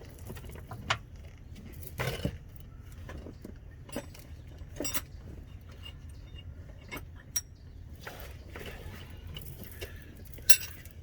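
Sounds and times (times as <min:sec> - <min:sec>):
metal tools clinking: 0:10.4 - 0:11.0.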